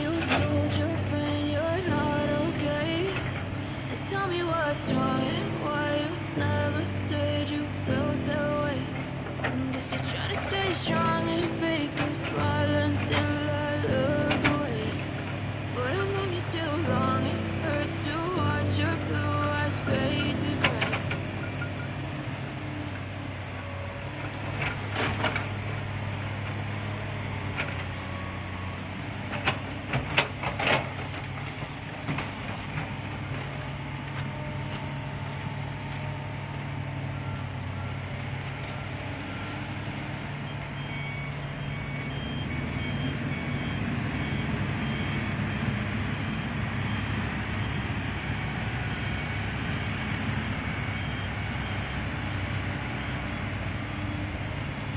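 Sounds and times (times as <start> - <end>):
excavator diesel engine: 0.0 - 54.9
reversing alarm beeping: 0.0 - 54.9.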